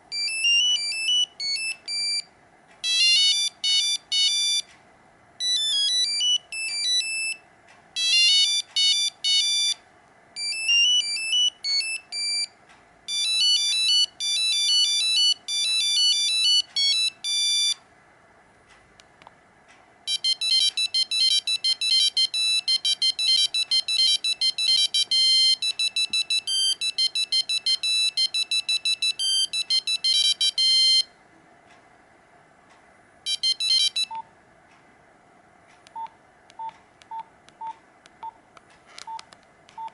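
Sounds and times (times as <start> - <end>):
monophonic ringtone melodies: 0.1 - 4.6, 5.4 - 7.4, 8.0 - 9.8, 10.4 - 12.5, 13.1 - 17.8, 20.1 - 31.1, 33.3 - 34.2.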